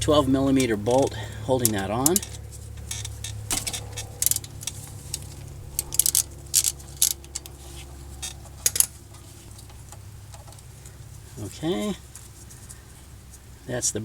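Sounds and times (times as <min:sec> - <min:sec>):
steady low hum: 0:00.0 - 0:14.0
metallic clinks of hand tools: 0:00.6 - 0:09.0.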